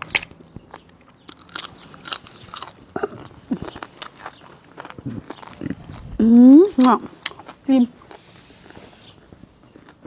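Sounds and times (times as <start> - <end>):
mouth clicks: 0.0 - 7.6
person chewing and crunching food: 0.0 - 10.0.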